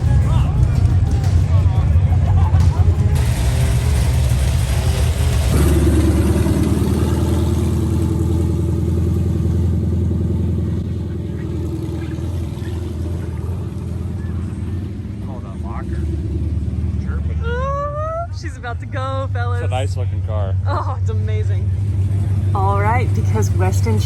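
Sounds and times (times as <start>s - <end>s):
car engine rumbling: 0.0s - 24.0s.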